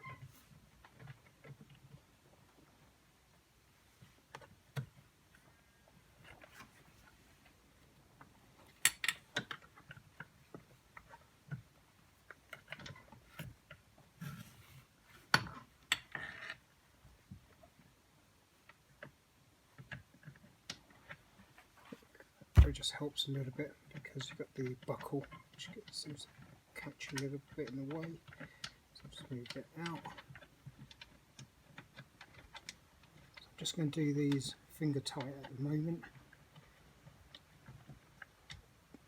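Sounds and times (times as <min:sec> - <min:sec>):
metal hardware clicking and knocking: 0:22.6 - 0:22.9.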